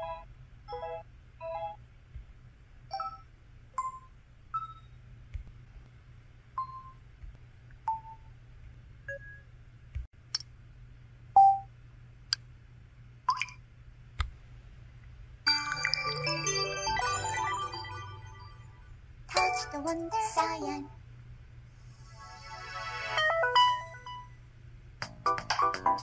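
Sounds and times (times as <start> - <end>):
phone electronic beeps and clicks: 2.9 - 5.0.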